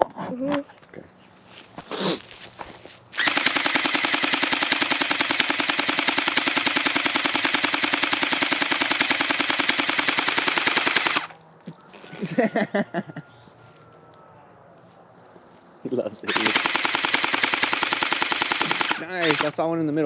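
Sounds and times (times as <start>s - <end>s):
gel blaster full auto fire: 3.2s - 11.3s, 16.3s - 19.7s.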